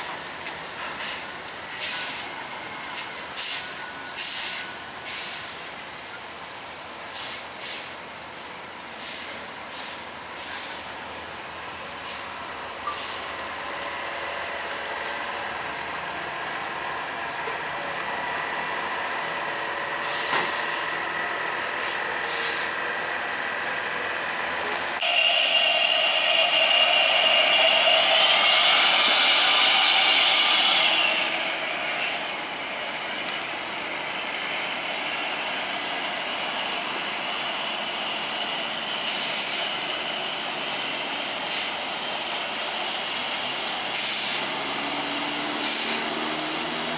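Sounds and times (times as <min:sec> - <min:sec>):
air brake hisses: 0:03.4 - 0:05.6, 0:07.1 - 0:08.0, 0:08.9 - 0:10.9, 0:12.0 - 0:13.4, 0:20.0 - 0:20.8, 0:21.8 - 0:22.8, 0:39.0 - 0:39.8, 0:41.5 - 0:41.9, 0:43.9 - 0:44.6, 0:45.6 - 0:46.2
high whine: 0:13.3 - 0:35.6.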